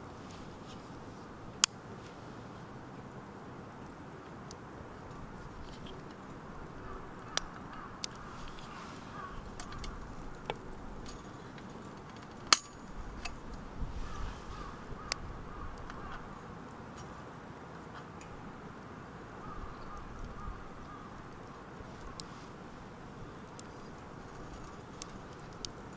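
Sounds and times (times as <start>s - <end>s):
wood fire crackling: 3.7s - 25.9s
birds calling: 5.5s - 10.6s, 13.9s - 16.6s, 19.0s - 22.3s
fire pops: 21.2s - 25.9s.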